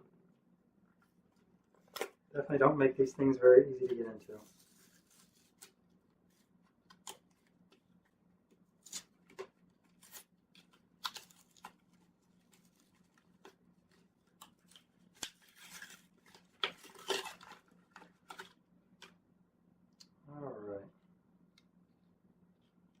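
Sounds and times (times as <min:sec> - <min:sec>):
plastic packaging crinkling and tearing: 0:08.8 - 0:18.6.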